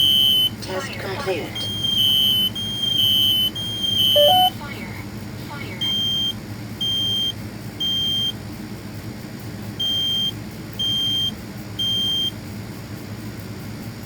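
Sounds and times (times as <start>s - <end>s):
smoke alarm beeps: 0.0s - 0.6s, 1.5s - 4.6s, 5.8s - 8.4s, 9.8s - 12.4s
low steady hum: 0.0s - 8.3s.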